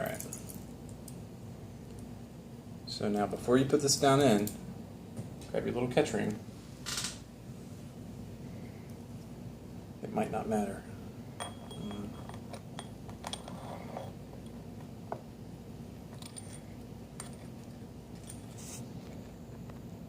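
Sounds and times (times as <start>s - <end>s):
small metal parts clinking: 16.1s - 17.5s.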